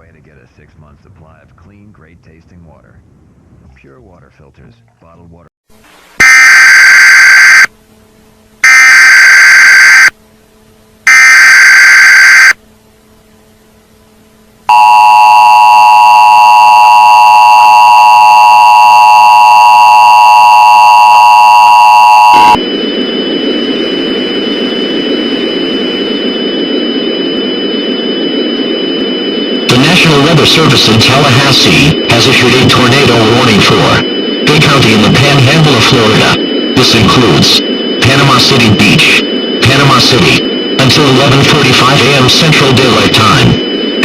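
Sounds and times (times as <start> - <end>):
faint high whine: 3.7 - 44.0
two-tone attention signal: 14.7 - 22.6
screeching data bursts: 29.6 - 43.6.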